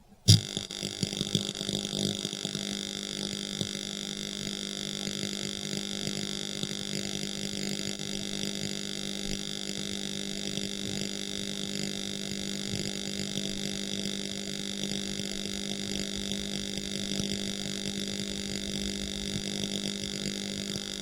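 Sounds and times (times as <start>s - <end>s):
welding arc humming and crackling: 0.0s - 21.0s.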